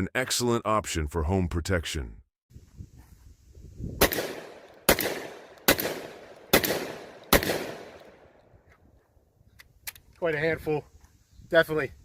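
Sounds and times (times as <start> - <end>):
shotgun shots with echo: 4.0 - 8.2.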